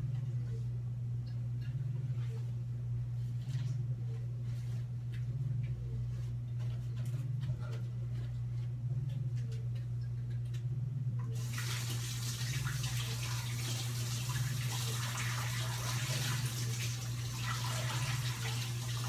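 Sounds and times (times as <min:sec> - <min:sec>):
kitchen faucet running: 0:11.4 - 0:19.0.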